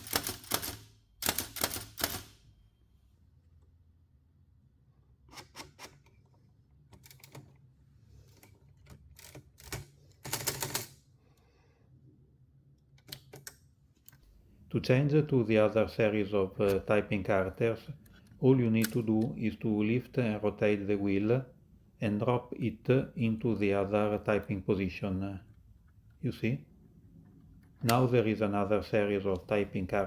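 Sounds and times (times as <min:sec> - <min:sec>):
typewriter clacking: 0:00.0 - 0:02.4.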